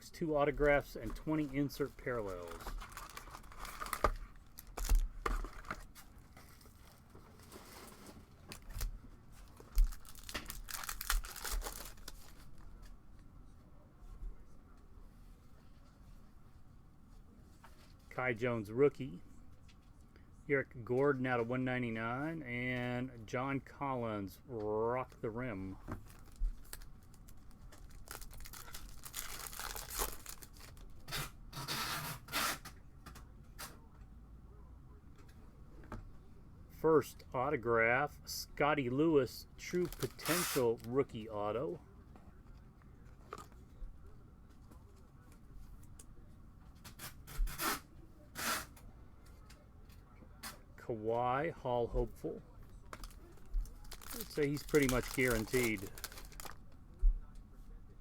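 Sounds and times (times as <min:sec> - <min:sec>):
wrappers crinkling: 0:01.3 - 0:12.7, 0:26.0 - 0:31.2, 0:39.8 - 0:40.9, 0:52.9 - 0:56.6
packaging being torn open: 0:02.4 - 0:05.8, 0:09.7 - 0:12.4, 0:26.0 - 0:31.3, 0:53.0 - 0:56.6.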